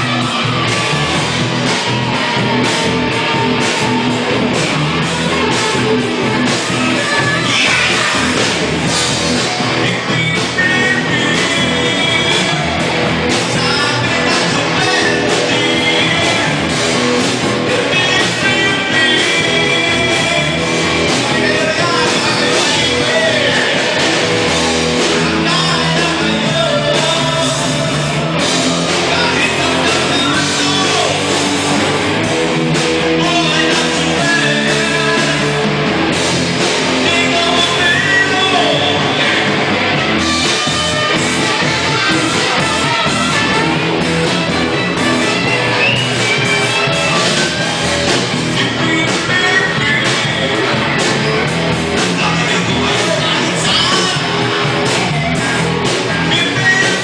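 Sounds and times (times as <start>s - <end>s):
loud rock music with singing: 0.0s - 57.0s.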